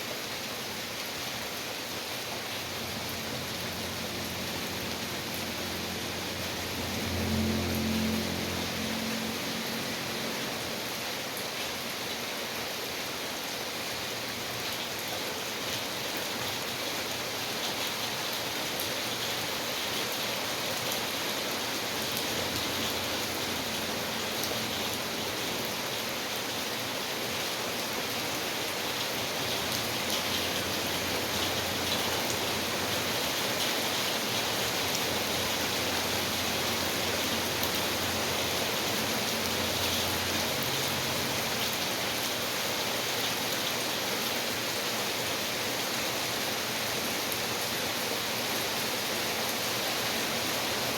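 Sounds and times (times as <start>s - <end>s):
patter of raindrops: 0.0s - 50.9s
steady rain falling: 0.0s - 50.9s.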